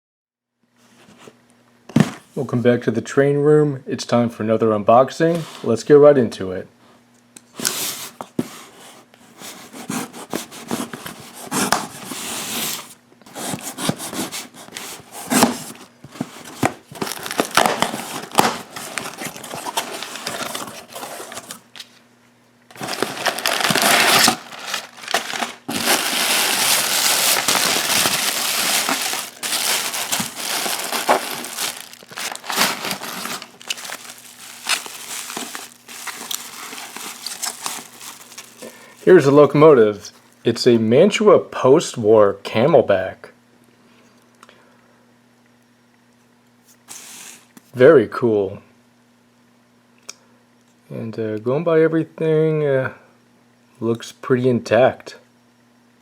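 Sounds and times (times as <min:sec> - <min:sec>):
packing material crinkling: 0:09.4 - 0:21.9, 0:22.7 - 0:40.1.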